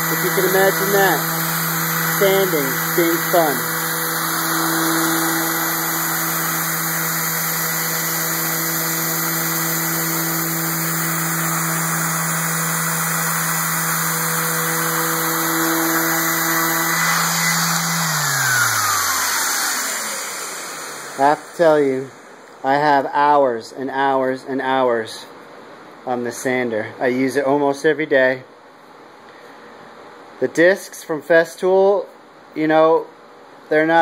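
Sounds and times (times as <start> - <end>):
dust extractor suction: 0.0 - 21.9
disc sander whirring: 0.0 - 22.5.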